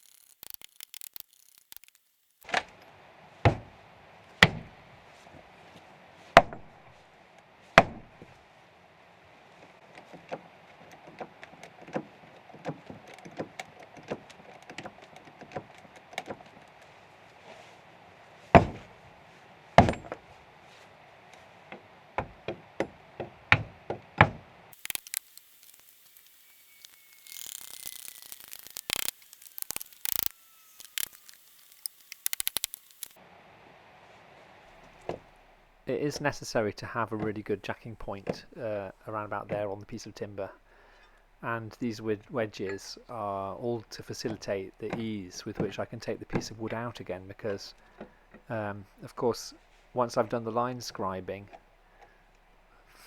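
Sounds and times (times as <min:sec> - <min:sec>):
sharp clicks and rattles: 0:00.0 - 0:02.4, 0:24.8 - 0:33.2.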